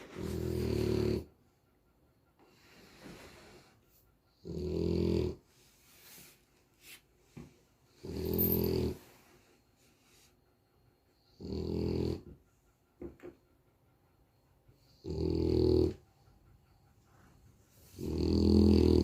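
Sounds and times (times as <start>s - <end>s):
dog snoring loudly: 0.0s - 1.3s, 4.4s - 5.4s, 8.0s - 9.0s, 11.3s - 12.3s, 14.9s - 16.0s, 17.9s - 19.0s
faint dog breathing: 0.0s - 19.0s.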